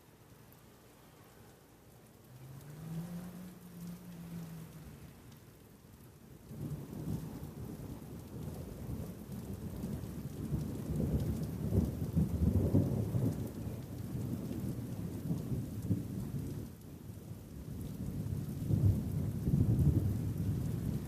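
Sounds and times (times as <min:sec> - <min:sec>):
steady rain: 0:00.0 - 0:21.0
rolling thunder: 0:06.5 - 0:16.7, 0:17.6 - 0:21.0.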